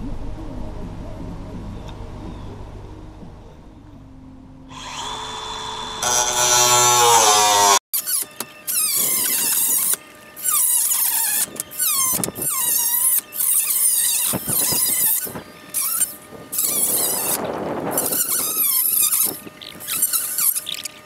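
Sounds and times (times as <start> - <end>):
cutting wheel screeching through steel: 4.7 - 21.0
metal cutting wheel whining: 4.7 - 21.0.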